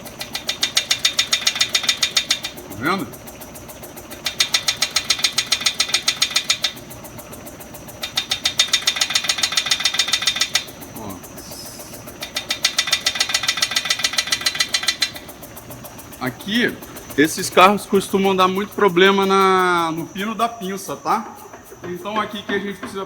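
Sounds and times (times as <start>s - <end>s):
shaker platform vibrating: 0.0s - 23.0s
rapid rattling knock of brake caliper: 3.2s - 10.9s, 16.8s - 23.0s.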